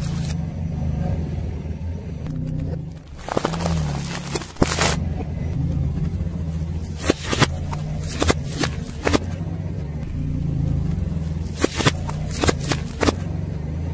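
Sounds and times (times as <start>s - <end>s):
car engine running: 0.0s - 13.9s
tyre crushing objects: 3.0s - 5.2s, 6.0s - 9.4s, 11.3s - 13.4s.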